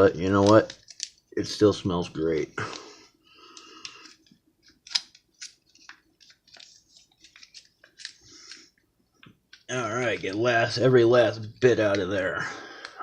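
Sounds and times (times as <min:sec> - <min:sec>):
foil pouch crinkling: 0:00.1 - 0:01.2, 0:03.6 - 0:08.7.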